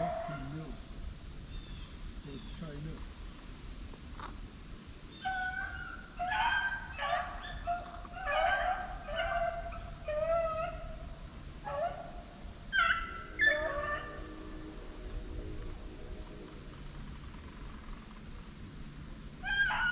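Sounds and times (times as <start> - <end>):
dog yelping: 0.0 - 0.5, 5.2 - 10.9, 11.6 - 12.1, 12.7 - 14.2, 19.4 - 19.9.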